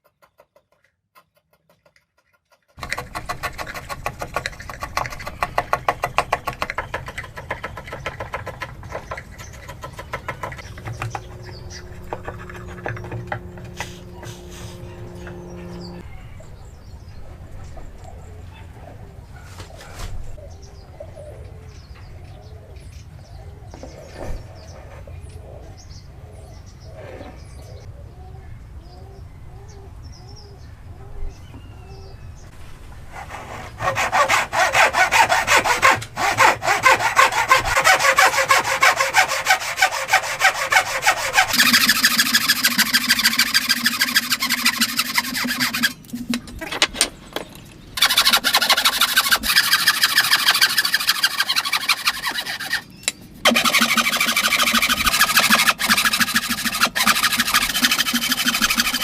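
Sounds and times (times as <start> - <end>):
saw cutting wood: 2.5 - 16.0, 33.1 - 46.7, 48.0 - 59.0
steady hum: 10.7 - 16.1.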